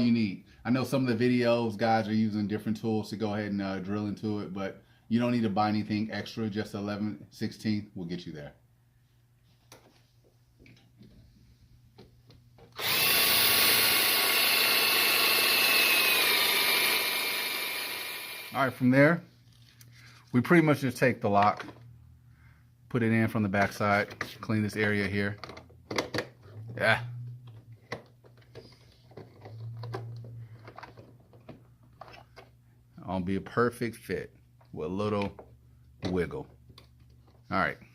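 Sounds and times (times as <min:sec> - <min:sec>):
power drill whining: 0:12.7 - 0:18.8.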